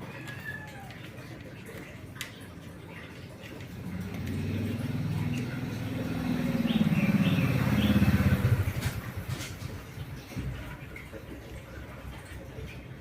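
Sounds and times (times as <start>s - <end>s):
vehicle engine passing by: 3.7s - 9.8s.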